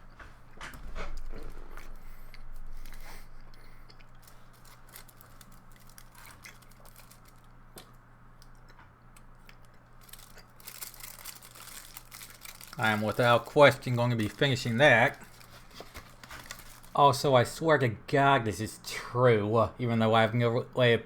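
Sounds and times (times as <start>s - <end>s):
steady low hum: 0.0s - 21.0s
person chewing: 1.0s - 13.5s, 15.1s - 17.0s.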